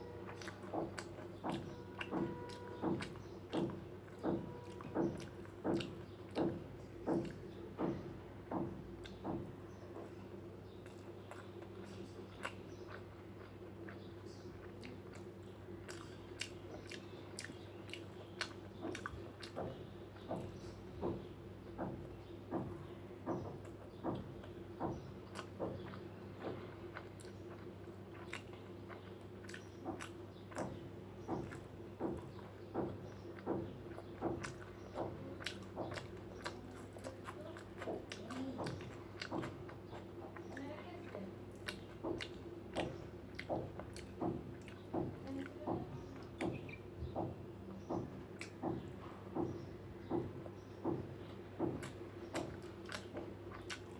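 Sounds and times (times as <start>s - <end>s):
person chewing and biting food: 10.8s - 21.2s, 25.2s - 40.5s, 41.4s - 45.2s, 51.6s - 53.9s.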